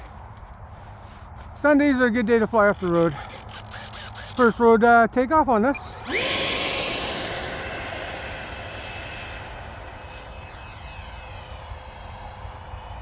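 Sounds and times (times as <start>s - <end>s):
electric ducted fan whine: 5.7s - 13.0s.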